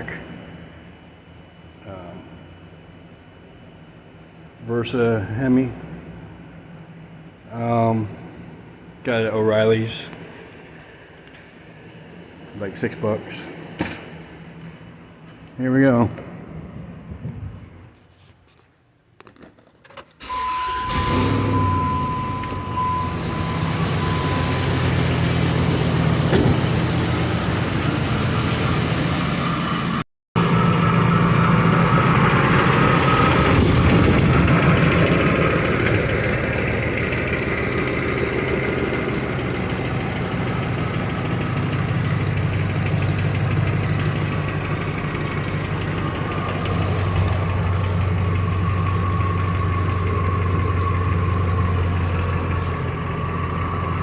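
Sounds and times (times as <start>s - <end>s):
pickup engine idling: 20.6s - 54.0s.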